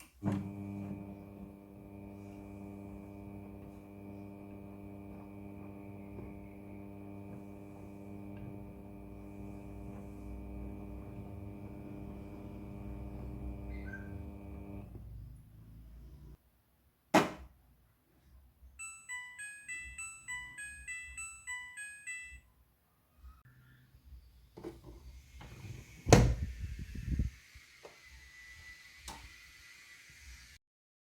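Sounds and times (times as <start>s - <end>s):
washing machine pump humming: 0.2s - 15.3s.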